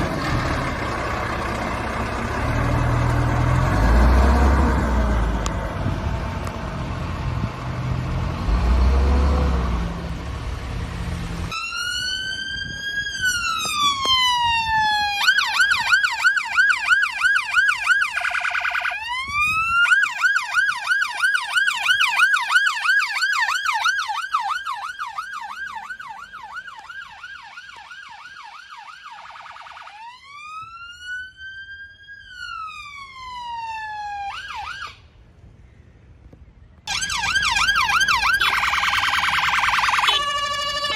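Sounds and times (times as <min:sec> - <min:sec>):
vehicle engine running: 0:00.0 - 0:11.5
emergency vehicle siren: 0:08.3 - 0:35.2, 0:36.8 - 0:40.9.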